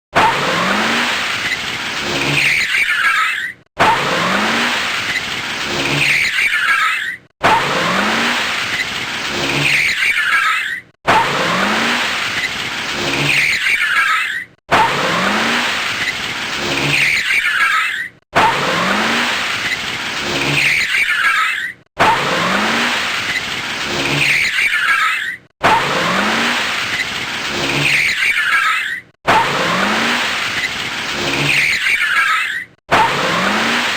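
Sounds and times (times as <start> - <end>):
car tires screeching: 0.2 - 33.9.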